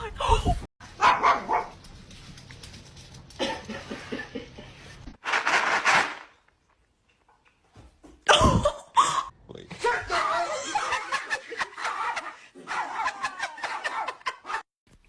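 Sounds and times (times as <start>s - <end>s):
dog barking: 1.0s - 1.8s, 11.8s - 14.6s.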